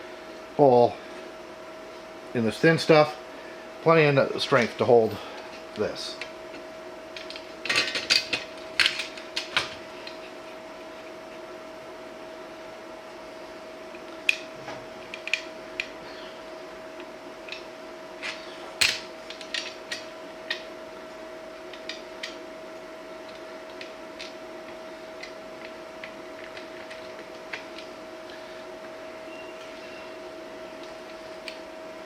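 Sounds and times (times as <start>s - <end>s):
steady hum: 0.0s - 32.0s.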